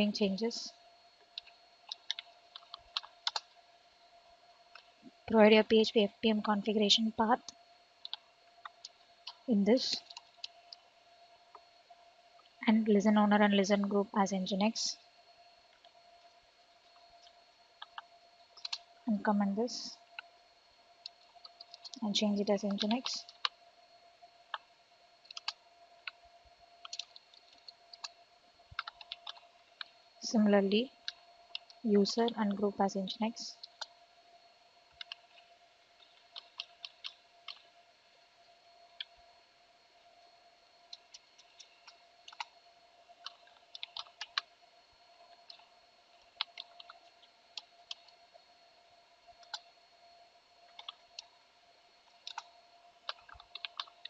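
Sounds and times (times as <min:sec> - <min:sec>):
faint electrical hum: 0:00.0 - 0:54.0
keyboard keystrokes clicking: 0:01.4 - 0:03.5, 0:18.6 - 0:18.8, 0:25.2 - 0:26.2, 0:26.8 - 0:28.2, 0:28.8 - 0:29.9, 0:40.9 - 0:42.5, 0:43.2 - 0:44.5, 0:46.4 - 0:48.1, 0:50.7 - 0:51.3, 0:52.2 - 0:52.5, 0:53.1 - 0:54.0.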